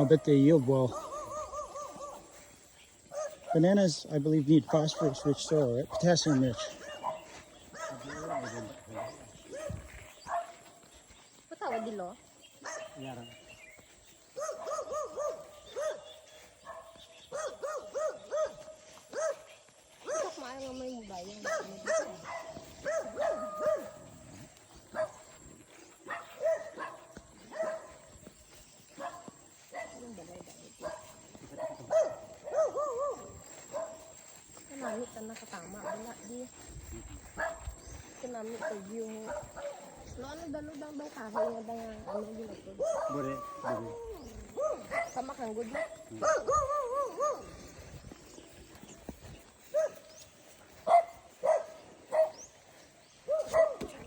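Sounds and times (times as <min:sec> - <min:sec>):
dog yipping: 0:00.9 - 0:02.4, 0:14.3 - 0:16.1, 0:16.7 - 0:20.4, 0:21.4 - 0:24.1, 0:30.8 - 0:34.1, 0:42.8 - 0:45.2, 0:45.8 - 0:47.6, 0:49.7 - 0:50.1, 0:53.3 - 0:54.0.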